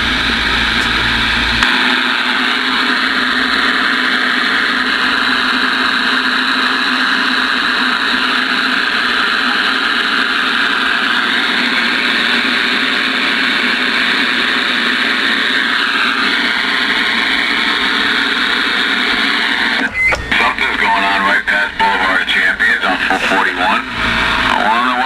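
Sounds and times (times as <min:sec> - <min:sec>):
radio static hiss: 0:00.0 - 0:01.6, 0:16.9 - 0:25.0
faint sliding whistles: 0:19.7 - 0:21.4.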